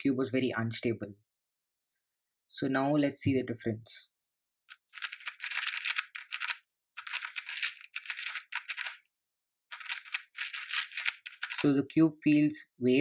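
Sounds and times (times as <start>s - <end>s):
speed cube clicking turns: 4.7s - 9.0s, 9.7s - 11.7s.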